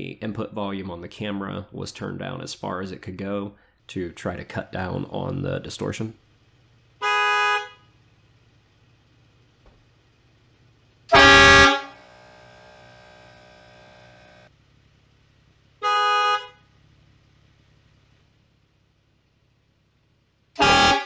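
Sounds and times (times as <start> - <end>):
loud multi-tone train horn blast: 7.0 - 7.8, 11.1 - 14.5, 15.8 - 16.6, 20.6 - 21.0.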